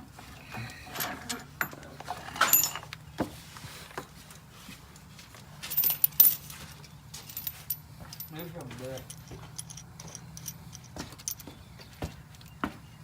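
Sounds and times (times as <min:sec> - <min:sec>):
metal tools clinking: 0:00.6 - 0:02.9, 0:05.6 - 0:11.6.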